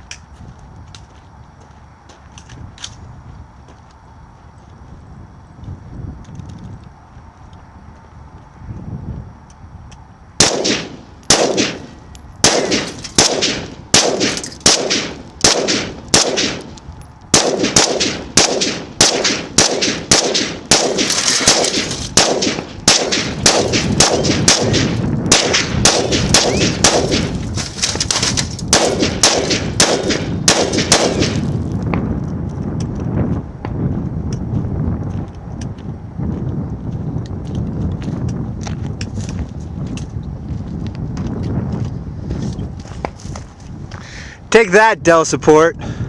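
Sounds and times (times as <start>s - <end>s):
rifle shots: 10.4s - 31.5s.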